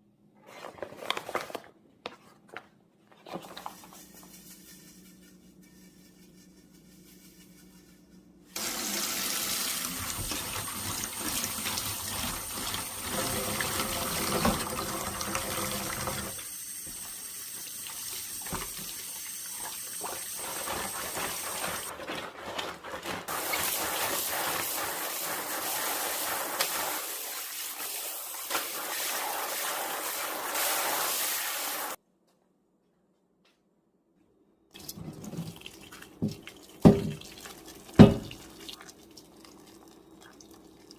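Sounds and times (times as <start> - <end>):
tap water running into sink: 8.6 - 21.9, 34.8 - 40.9.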